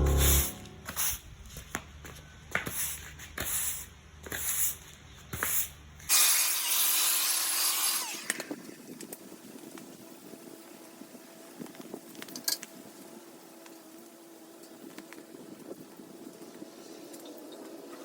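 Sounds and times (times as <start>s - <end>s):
sand hissing: 0.0s - 1.3s.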